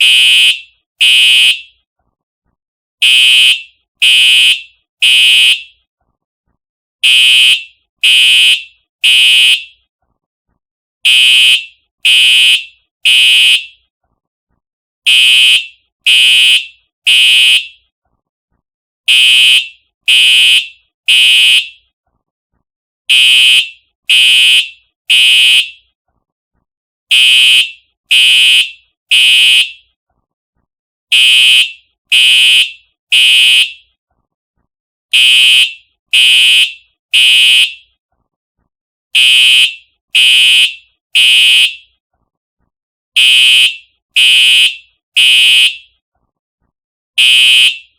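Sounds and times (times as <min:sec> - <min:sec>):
fire alarm horn blasts: 0:00.0 - 0:01.8, 0:03.0 - 0:05.8, 0:07.0 - 0:09.8, 0:11.0 - 0:13.8, 0:15.1 - 0:17.8, 0:19.1 - 0:21.9, 0:23.1 - 0:25.9, 0:27.1 - 0:29.9, 0:31.1 - 0:33.9, 0:35.1 - 0:37.9, 0:39.2 - 0:41.9, 0:43.2 - 0:46.0, 0:47.2 - 0:47.9.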